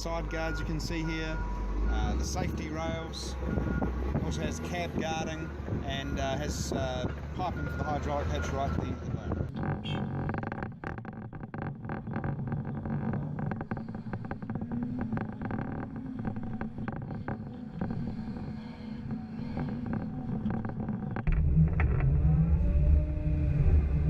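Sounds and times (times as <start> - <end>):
excavator diesel engine running: 0.0 - 10.0.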